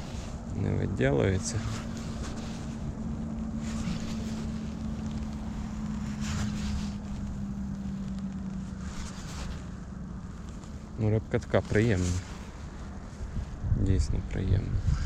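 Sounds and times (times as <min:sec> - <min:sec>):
low motor hum: 0:00.0 - 0:15.0
wind buffeting microphone: 0:13.0 - 0:15.0.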